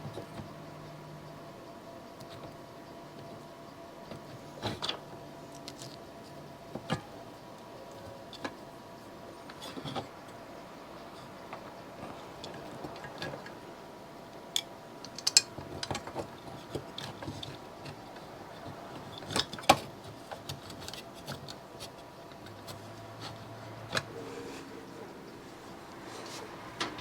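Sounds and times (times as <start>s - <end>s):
faint steady hum: 0.0s - 27.0s
metal parts clicking and clinking: 14.6s - 16.2s.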